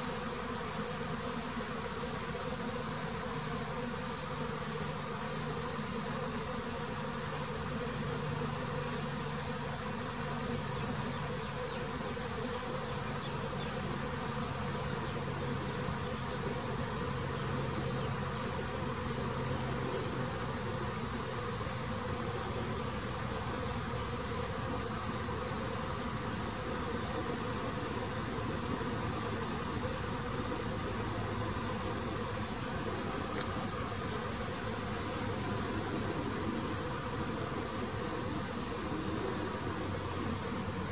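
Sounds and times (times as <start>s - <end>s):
bees humming: 0.0s - 40.9s.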